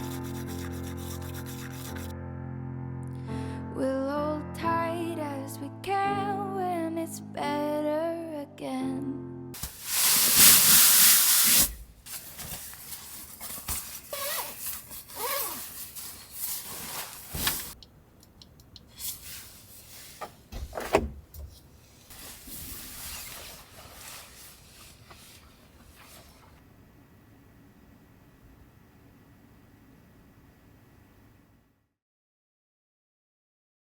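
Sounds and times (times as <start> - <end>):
loud rushing hiss: 9.6 - 12.0
objects being handled: 9.6 - 17.8.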